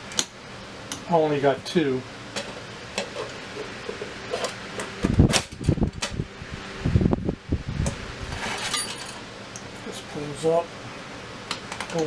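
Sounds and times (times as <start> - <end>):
steady hum: 0.0 - 12.0
parts clunking into metal case: 8.4 - 9.2.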